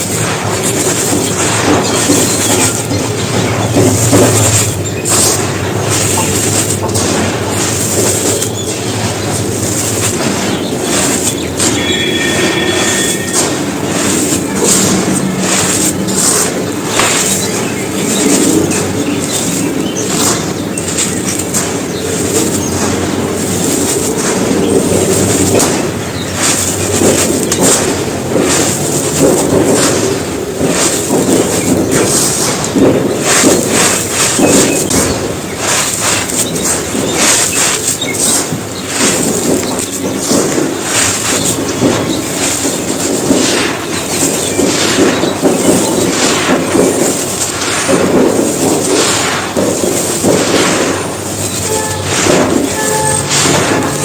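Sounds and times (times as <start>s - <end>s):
bricks crunching and grinding: 0.0s - 54.0s
short high squeak: 11.7s - 13.4s.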